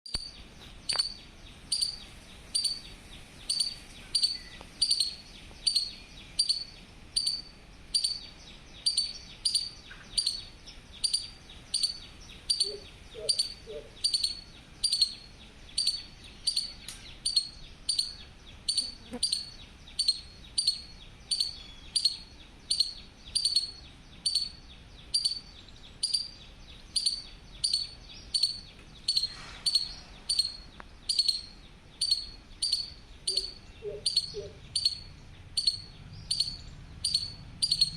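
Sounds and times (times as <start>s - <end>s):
squirrel chirping: 0.0s - 37.9s.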